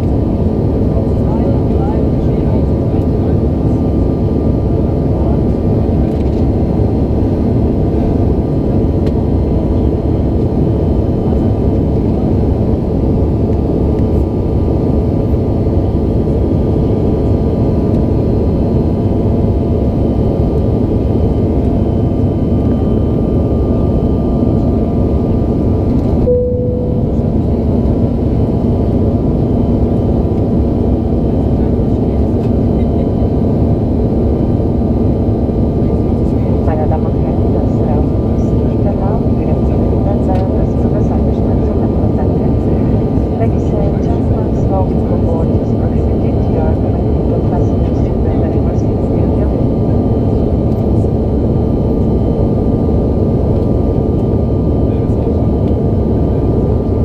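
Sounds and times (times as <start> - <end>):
aircraft cabin engine drone: 0.0 - 57.0
short cabin chime: 26.3 - 27.2.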